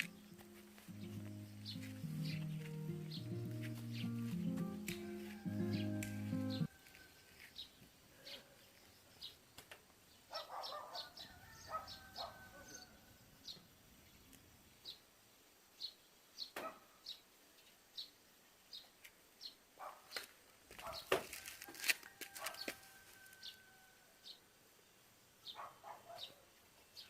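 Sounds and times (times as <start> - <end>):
bird chirping: 0.0 - 15.1.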